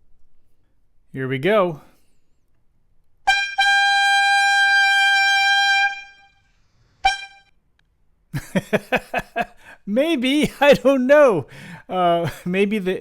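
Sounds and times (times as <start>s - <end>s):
high-pitched horn tone: 3.2s - 7.6s.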